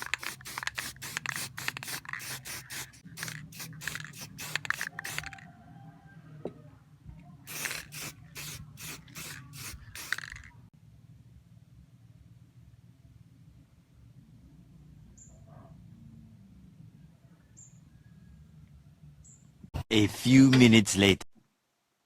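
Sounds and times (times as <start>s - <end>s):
spray-paint can hissing bursts: 0.0s - 5.4s, 7.5s - 10.5s.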